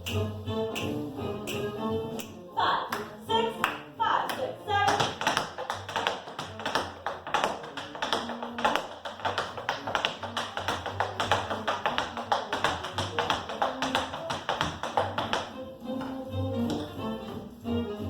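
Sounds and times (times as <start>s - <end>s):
tap shoes striking floor: 4.9s - 17.0s.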